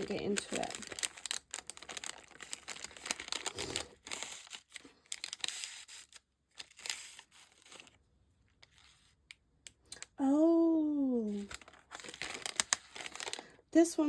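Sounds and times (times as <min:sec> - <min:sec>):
crinkly packaging rustling: 0:00.0 - 0:10.2, 0:11.0 - 0:14.0.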